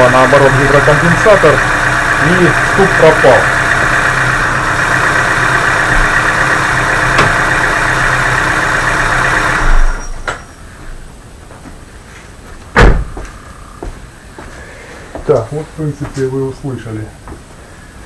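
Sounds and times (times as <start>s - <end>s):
car engine idling: 0.0s - 11.4s
heavy thump: 5.9s - 6.2s, 7.1s - 7.4s, 12.7s - 14.0s.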